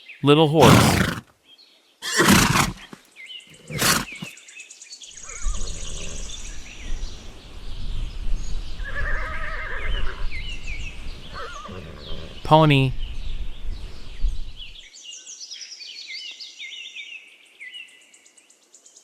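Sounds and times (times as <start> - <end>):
foal neighing: 0.3 - 1.2, 2.0 - 3.0, 3.6 - 4.3.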